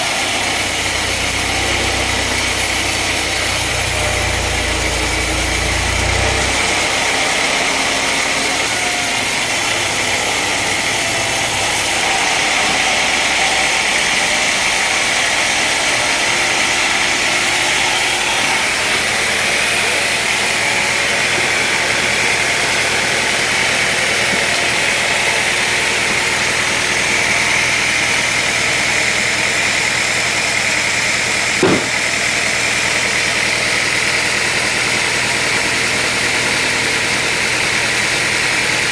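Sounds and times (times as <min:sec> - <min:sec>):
woodworking machinery running: 0:00.0 - 0:38.9
short knock: 0:31.6 - 0:32.0.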